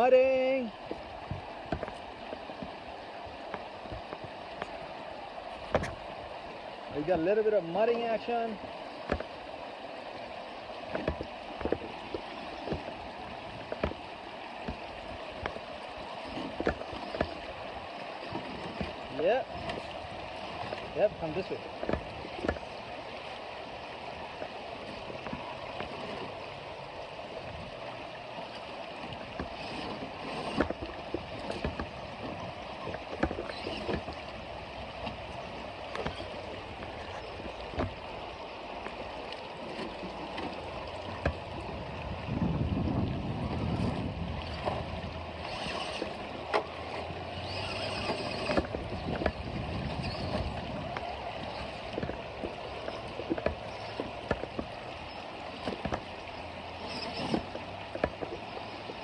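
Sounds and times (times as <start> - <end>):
creek water splashing: 0.0 - 59.0.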